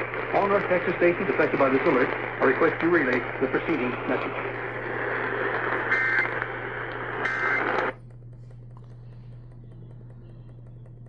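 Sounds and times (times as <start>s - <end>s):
low steady hum: 0.0s - 11.0s
radio static: 0.0s - 11.0s
data bursts: 5.0s - 8.0s.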